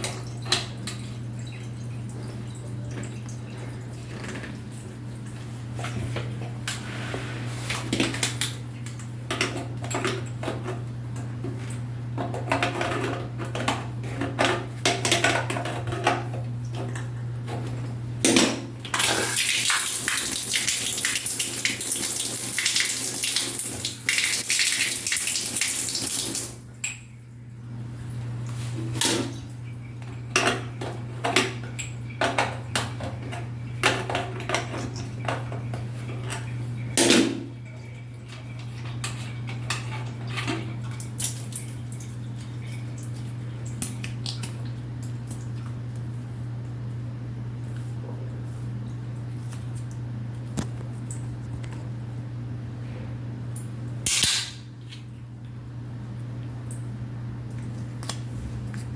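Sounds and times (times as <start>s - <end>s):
tap water running: 0.0s - 46.7s.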